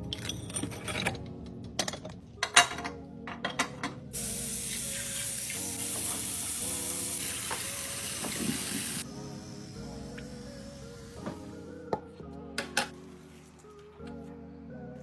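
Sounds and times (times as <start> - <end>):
steady hiss: 4.2 - 11.2.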